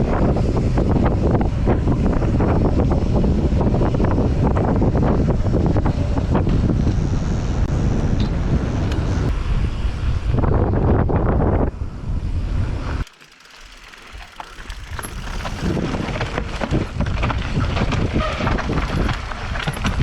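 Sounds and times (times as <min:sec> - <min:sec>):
wind buffeting microphone: 0:00.0 - 0:13.1, 0:13.8 - 0:20.0
bike tyres rattling over rough ground: 0:13.0 - 0:20.0.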